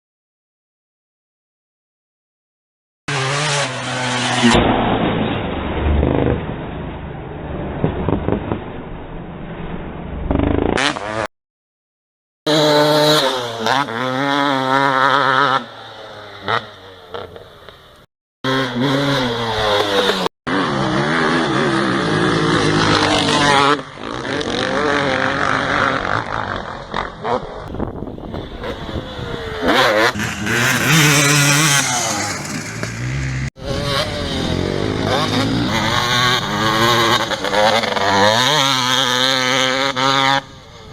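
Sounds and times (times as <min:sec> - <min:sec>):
motocross engine revving hard: 0:03.1 - 0:05.1, 0:10.3 - 0:11.3, 0:12.5 - 0:17.7, 0:18.5 - 0:27.4, 0:28.3 - 0:40.9.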